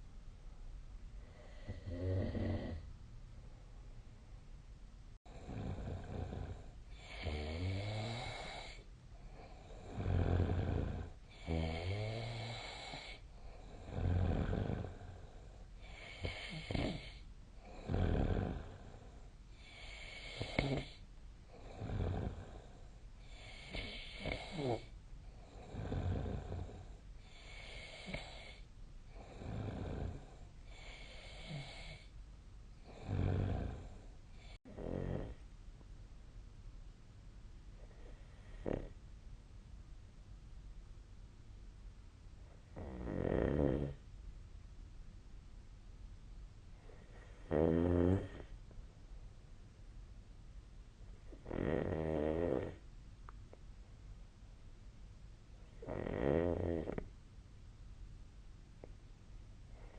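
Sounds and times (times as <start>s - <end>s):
person snoring: 1.2s - 2.9s, 5.3s - 28.6s, 29.2s - 32.1s, 32.8s - 35.4s, 38.0s - 39.0s, 42.7s - 44.0s, 47.0s - 48.5s, 51.3s - 52.8s, 55.7s - 57.1s.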